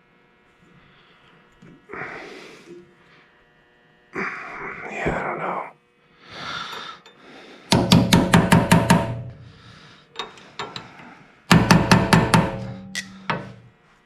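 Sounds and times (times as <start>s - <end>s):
metallic ringing: 12.1s - 13.7s.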